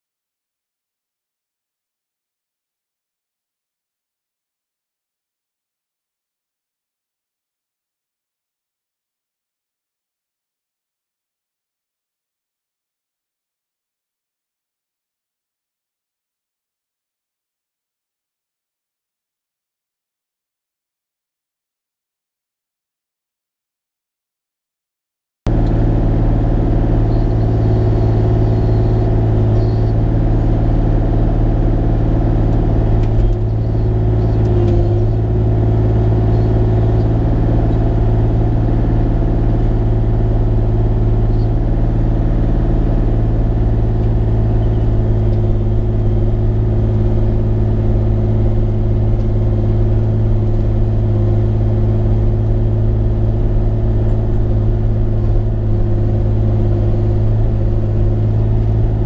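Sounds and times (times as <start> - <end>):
excavator diesel engine running: 25.5 - 59.0.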